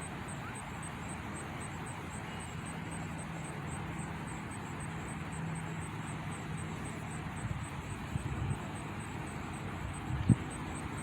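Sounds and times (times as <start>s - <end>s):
distant engine drone: 0.0s - 11.0s
wind bumps on microphone: 10.0s - 10.5s.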